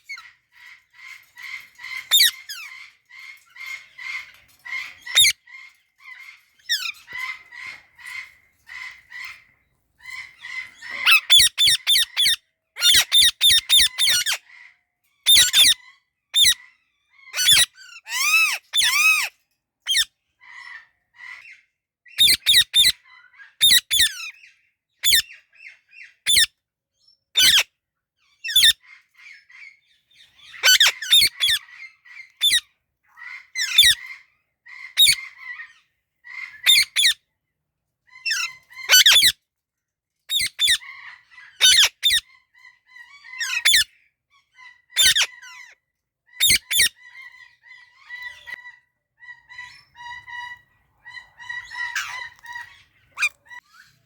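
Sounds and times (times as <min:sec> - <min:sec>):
parakeets squawking: 0:01.9 - 0:02.4, 0:04.9 - 0:05.4, 0:10.1 - 0:14.4, 0:17.4 - 0:19.3, 0:27.4 - 0:27.6, 0:28.5 - 0:28.8, 0:30.4 - 0:32.6, 0:33.3 - 0:34.1, 0:35.0 - 0:35.6, 0:36.4 - 0:37.2, 0:38.3 - 0:39.3, 0:40.3 - 0:42.2, 0:43.3 - 0:43.8, 0:44.9 - 0:45.6, 0:46.4 - 0:47.0, 0:49.5 - 0:53.8.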